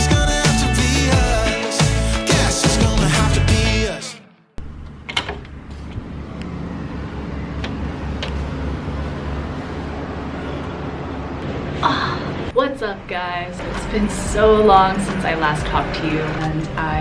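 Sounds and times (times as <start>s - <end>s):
pop background music: 0.0s - 4.3s.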